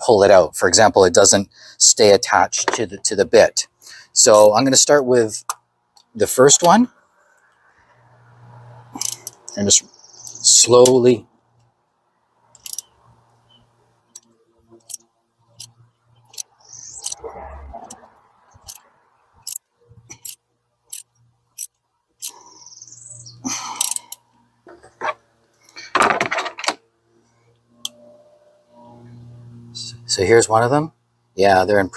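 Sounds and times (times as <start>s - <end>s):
ratchet clicking: 9.0s - 9.4s, 12.5s - 13.4s, 14.1s - 17.2s, 17.8s - 22.4s, 23.7s - 24.2s.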